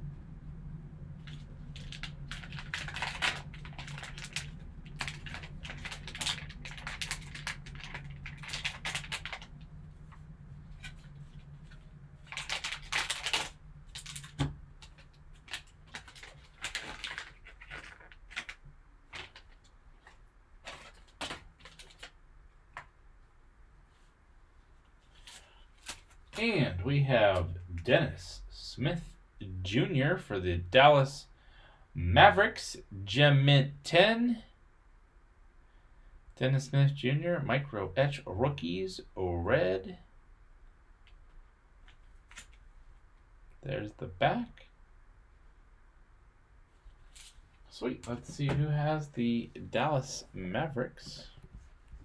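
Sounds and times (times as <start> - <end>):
steady low hum: 0.0 - 52.0
plastic packaging crinkling: 1.2 - 22.2, 41.8 - 42.8.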